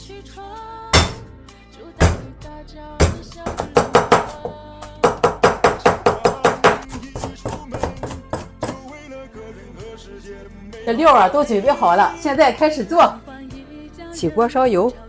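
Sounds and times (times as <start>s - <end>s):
background music: 0.0s - 15.0s
knife chopping on cutting board: 1.0s - 1.3s, 2.0s - 2.3s, 3.0s - 8.9s.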